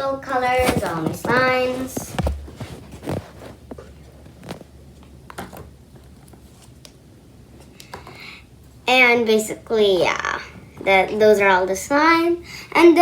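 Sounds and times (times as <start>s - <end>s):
plastic containers clicking and knocking: 0.4s - 4.7s.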